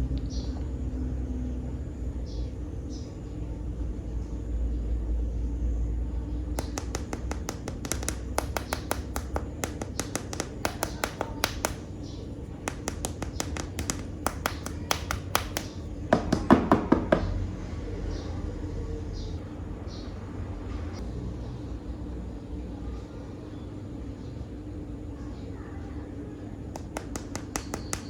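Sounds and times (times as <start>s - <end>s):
toy figures clicking and tapping: 6.6s - 11.9s, 12.6s - 16.9s, 26.8s - 28.0s.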